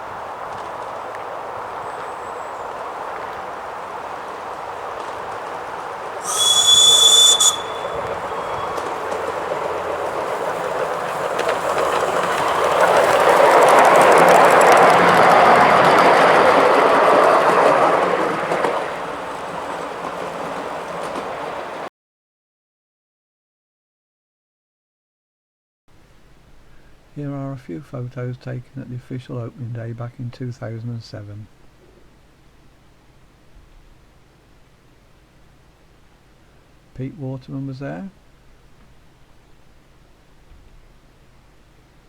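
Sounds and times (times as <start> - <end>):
miniature train clattering past: 0.0 - 21.9
shrill train whistle: 6.2 - 10.0.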